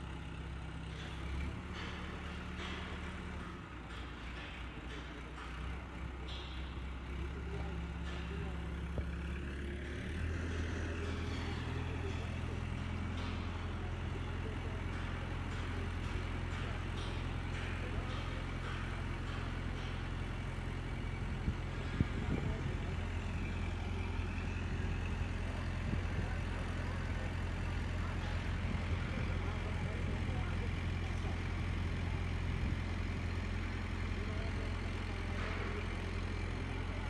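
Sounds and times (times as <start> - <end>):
crane diesel engine running: 0.0 - 37.0.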